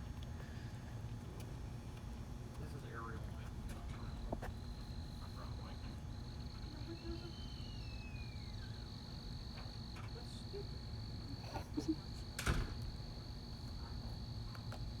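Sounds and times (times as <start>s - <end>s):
faint falling whistle: 6.9s - 8.9s.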